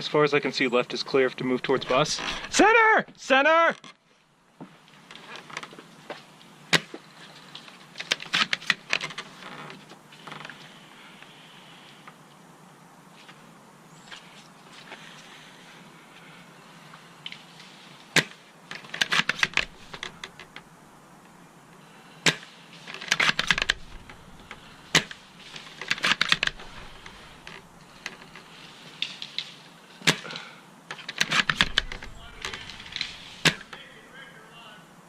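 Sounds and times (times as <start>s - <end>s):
airsoft rifle shots: 31.3s - 33.8s.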